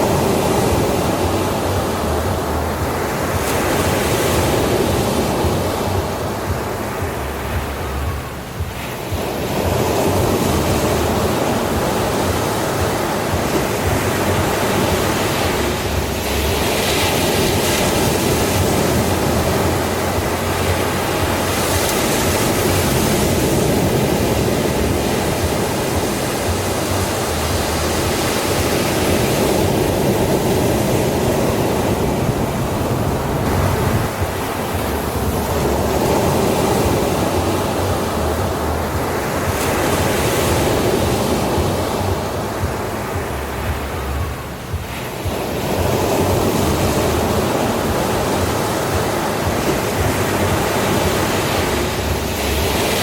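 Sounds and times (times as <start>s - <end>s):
ocean waves breaking: 0.0s - 53.0s.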